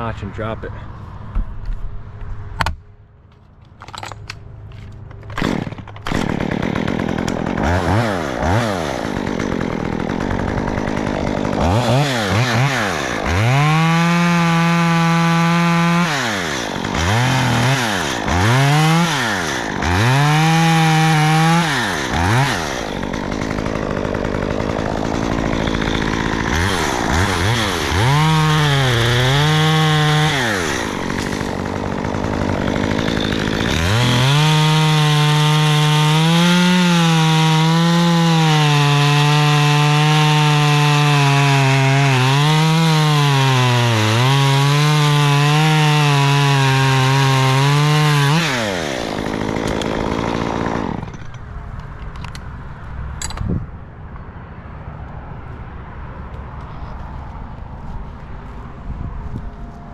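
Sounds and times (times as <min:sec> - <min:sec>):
chainsaw revving: 0:05.4 - 0:51.4.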